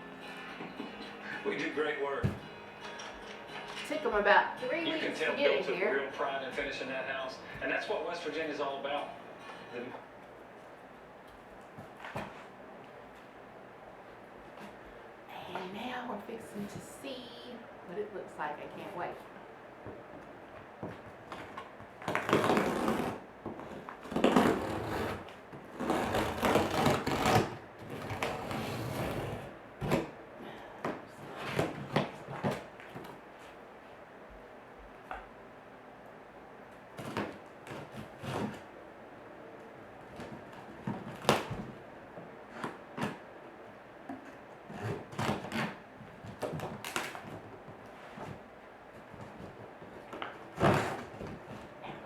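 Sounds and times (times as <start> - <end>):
cardboard and wrapping ripping: 21.4 - 30.1.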